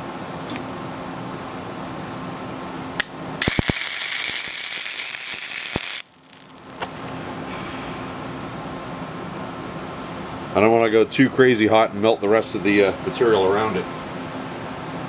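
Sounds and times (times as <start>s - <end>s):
shop hum: 0.0s - 10.6s
welder arc crackling: 3.0s - 7.1s.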